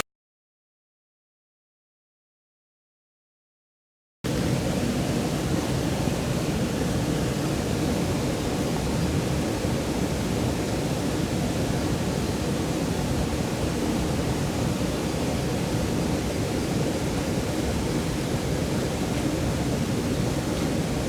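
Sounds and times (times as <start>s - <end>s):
mountain stream flowing: 4.3s - 21.0s.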